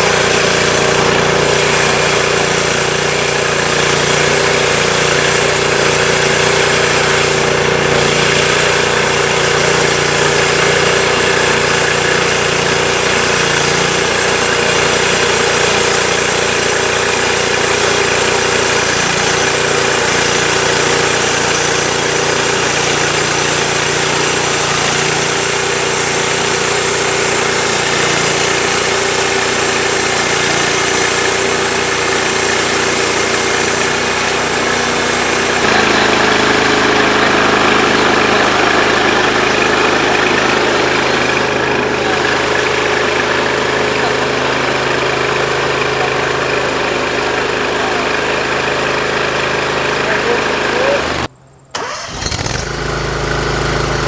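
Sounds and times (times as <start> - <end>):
petrol engine running: 0.0 - 54.0.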